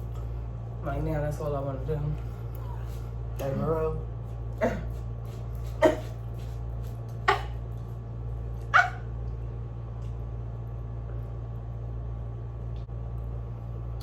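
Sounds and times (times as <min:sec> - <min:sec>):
steady low hum: 0:00.0 - 0:14.0
small dog barking: 0:08.7 - 0:09.1.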